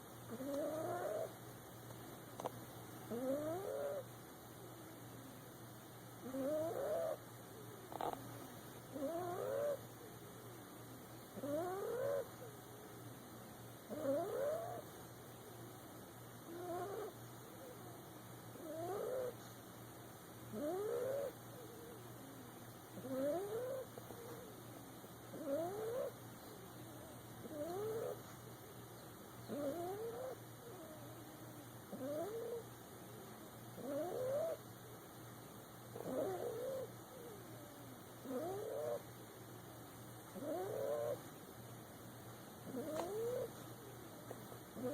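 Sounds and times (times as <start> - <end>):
puppy snoring: 0.3 - 1.4, 3.1 - 4.1, 6.2 - 7.2, 7.9 - 9.9, 11.4 - 12.5, 13.9 - 14.9, 16.4 - 17.2, 18.6 - 19.5, 20.5 - 21.4, 23.0 - 24.5, 25.3 - 26.2, 27.4 - 28.3, 29.4 - 31.0, 31.9 - 32.7, 33.8 - 34.6, 35.9 - 39.0, 40.3 - 41.2, 42.6 - 43.6.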